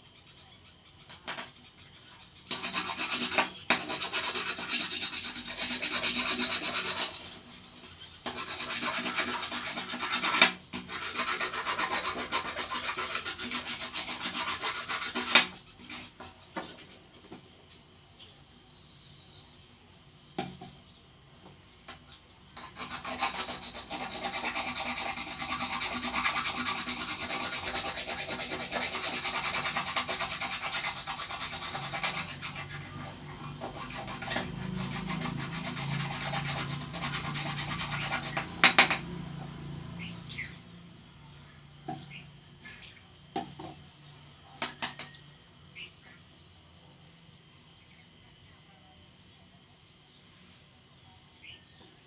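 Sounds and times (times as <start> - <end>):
abrasive rubbing on metal: 22.6 - 39.6.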